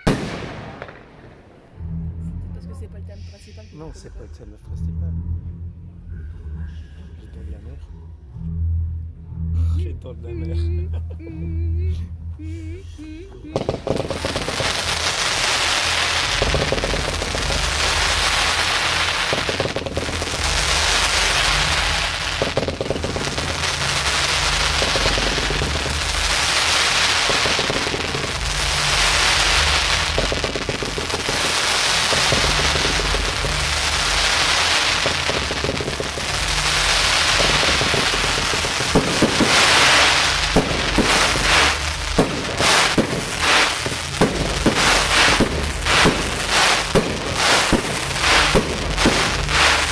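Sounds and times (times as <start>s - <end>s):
sharp firework bangs: 0.0s - 2.0s, 13.6s - 49.9s
fireworks crackling: 0.0s - 4.1s, 12.4s - 49.9s.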